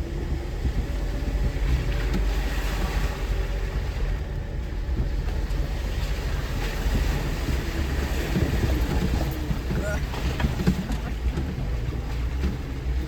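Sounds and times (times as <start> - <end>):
low engine rumble: 0.0 - 13.0
knocks and rattles: 6.6 - 13.0.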